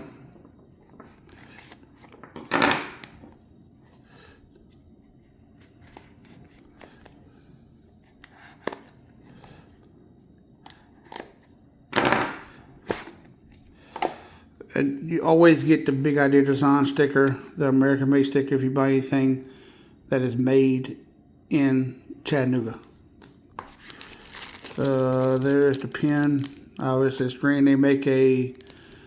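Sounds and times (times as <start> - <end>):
packaging rustling or tearing: 0.9 - 2.3, 23.6 - 27.5, 28.5 - 29.0
packaging handling clicks: 23.2 - 27.4, 28.5 - 29.0.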